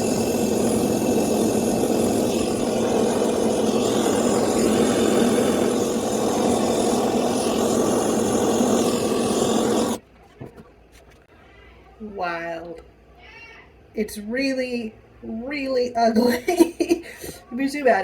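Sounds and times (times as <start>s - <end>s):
gas torch flame rushing: 0.0s - 10.0s.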